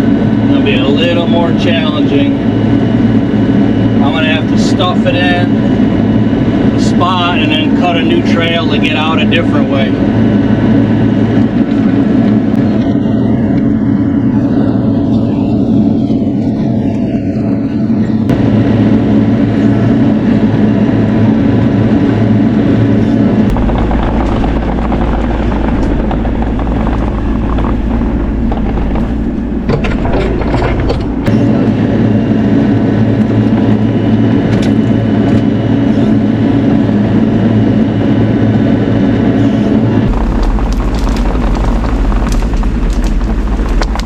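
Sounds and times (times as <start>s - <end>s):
deeper rumble: 0.0s - 44.0s
excavator diesel engine running: 17.6s - 37.7s, 38.6s - 44.0s
sharp cracks and knocks: 23.5s - 31.3s, 40.1s - 44.0s.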